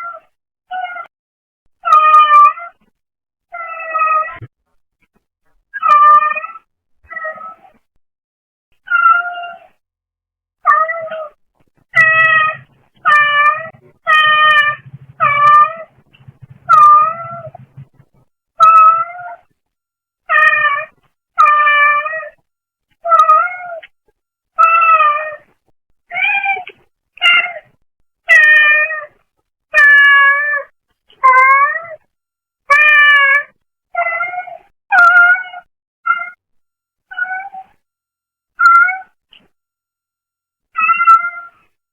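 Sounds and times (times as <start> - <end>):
cat meowing: 12.0 - 17.9
faint low buzz: 12.0 - 18.2.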